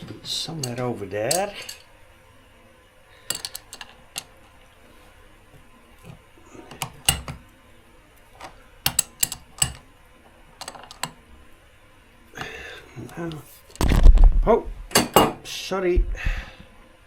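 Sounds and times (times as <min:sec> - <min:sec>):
metal tools clicking and clinking: 0:00.6 - 0:01.9, 0:03.3 - 0:04.5, 0:06.0 - 0:07.4, 0:08.4 - 0:09.8, 0:10.6 - 0:11.2, 0:15.0 - 0:15.4.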